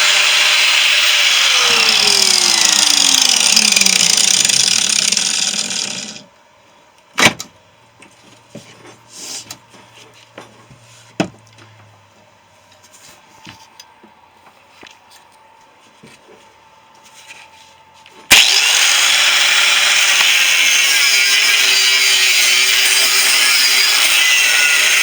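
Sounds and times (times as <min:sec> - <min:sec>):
power tool cutting metal: 0:00.0 - 0:06.3, 0:18.3 - 0:25.0.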